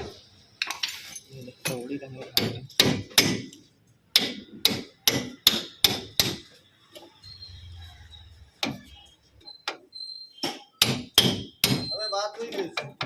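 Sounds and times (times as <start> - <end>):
hammer striking metal body: 2.3 - 3.5, 4.1 - 6.4, 10.4 - 11.9.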